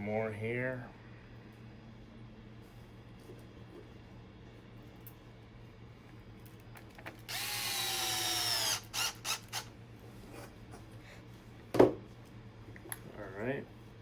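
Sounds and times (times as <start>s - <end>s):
electric screwdriver whining: 7.3s - 9.7s.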